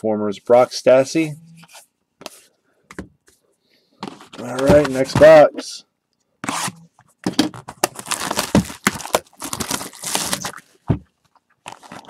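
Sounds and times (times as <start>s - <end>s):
plastic wrapping crinkling: 7.5s - 12.0s.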